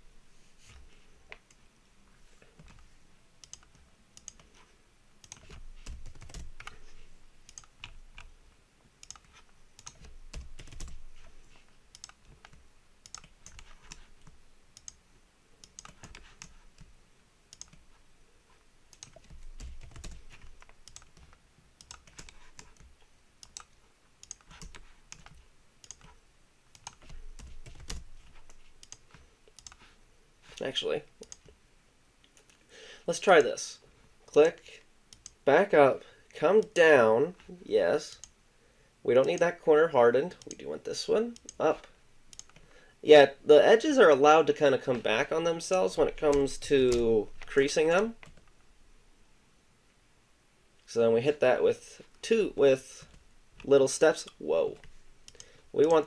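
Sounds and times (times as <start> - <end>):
mouse clicks: 3.4 - 4.5, 17.5 - 17.8, 20.4 - 27.2, 42.3 - 42.6
keyboard typing: 3.4 - 4.6, 5.2 - 8.4, 9.0 - 11.3, 11.9 - 15.0, 15.6 - 16.9, 17.5 - 18.0, 18.9 - 29.9.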